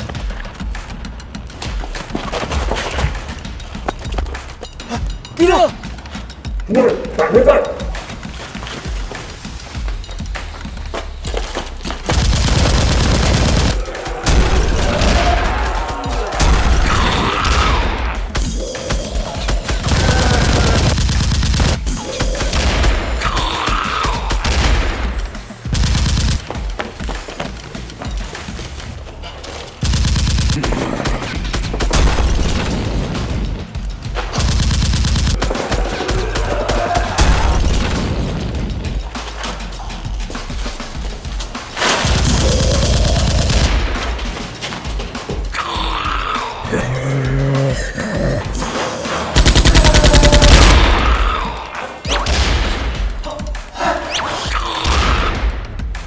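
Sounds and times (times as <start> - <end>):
action background music: 0.0 - 56.0
automatic gunfire: 12.0 - 26.6, 29.8 - 39.1, 49.3 - 51.5.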